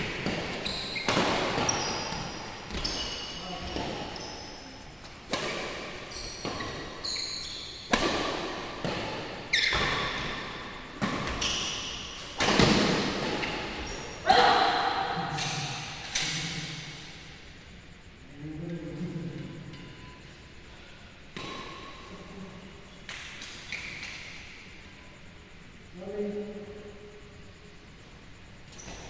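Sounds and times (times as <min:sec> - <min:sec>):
rackets hitting shuttlecock: 0:00.0 - 0:04.2, 0:05.0 - 0:07.1, 0:07.7 - 0:13.9
shoes squeaking on court: 0:00.0 - 0:14.3, 0:28.6 - 0:29.0.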